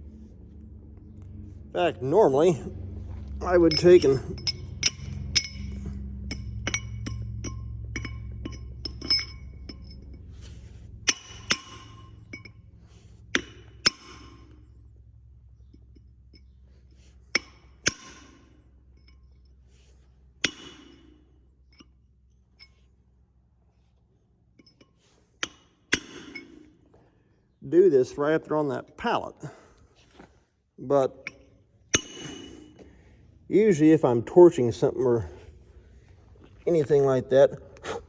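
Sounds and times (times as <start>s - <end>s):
low hum: 0.0s - 38.0s
steel parts knocking together: 3.4s - 12.6s, 13.3s - 14.8s, 17.3s - 19.5s, 20.4s - 22.0s, 24.6s - 27.0s, 31.2s - 33.1s.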